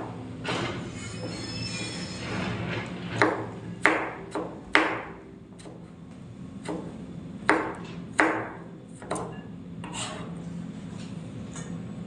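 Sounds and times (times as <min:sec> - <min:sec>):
knife chopping on cutting board: 0:03.2 - 0:05.8, 0:06.6 - 0:09.3.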